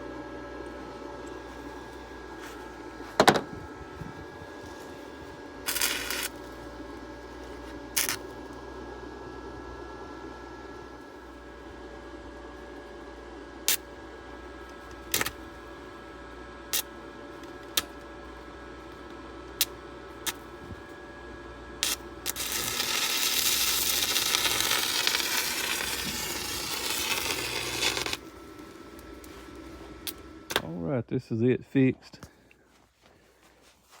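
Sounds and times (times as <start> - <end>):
welding arc crackling and sizzling: 4.6 - 8.5, 11.1 - 15.8, 16.7 - 19.0, 19.6 - 20.5, 21.8 - 30.7.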